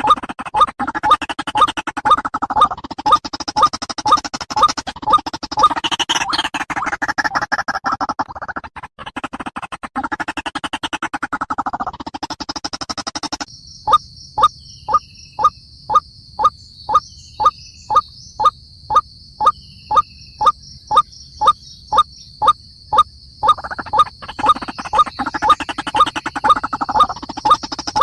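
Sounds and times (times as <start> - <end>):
fast pulsing sound: 0.0 - 14.5, 15.4 - 17.0, 17.9 - 28.0
high insect drone: 12.7 - 28.0
waterhen calling kook notes: 15.4 - 22.6, 23.4 - 28.0.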